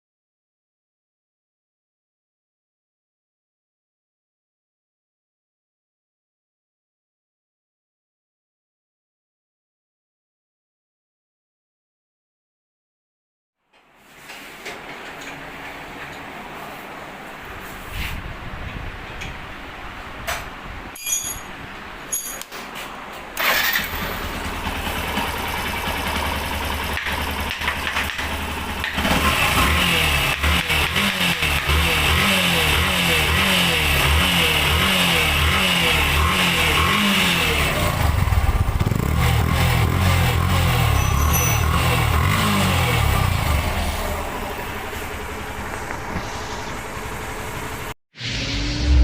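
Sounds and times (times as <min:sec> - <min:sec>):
motorcycle engine starting and idling: 0:23.3 - 0:48.0.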